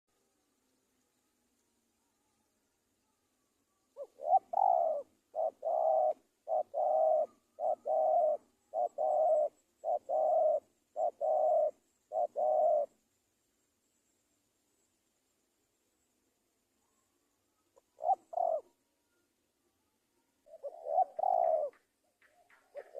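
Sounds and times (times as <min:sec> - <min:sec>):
dove cooing: 0:04.0 - 0:13.0, 0:17.7 - 0:18.8, 0:20.4 - 0:22.9.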